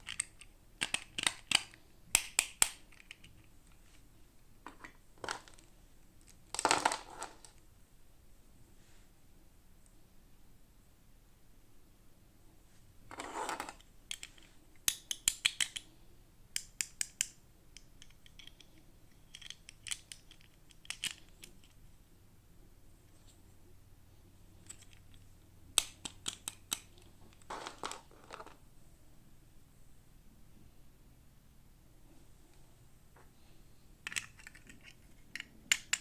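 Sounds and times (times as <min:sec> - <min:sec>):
plastic toys clicking and tapping: 0:00.0 - 0:03.5, 0:13.6 - 0:15.9, 0:16.5 - 0:21.8, 0:25.8 - 0:28.6, 0:34.0 - 0:36.0.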